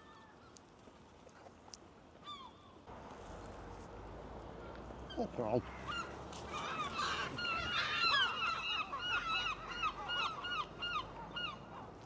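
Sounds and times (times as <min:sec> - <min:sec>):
seagulls calling: 0:05.1 - 0:12.0.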